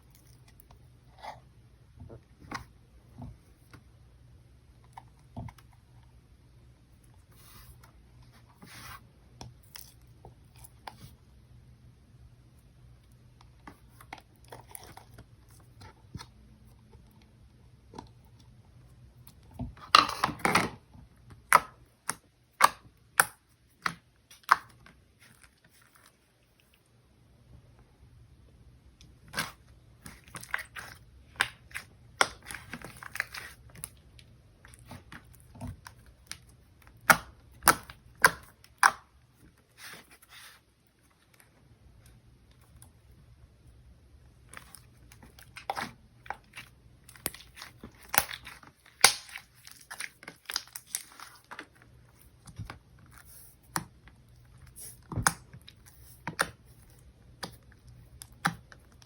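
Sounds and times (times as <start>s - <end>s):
hands squishing slime: 29.1s - 40.7s, 44.4s - 59.0s.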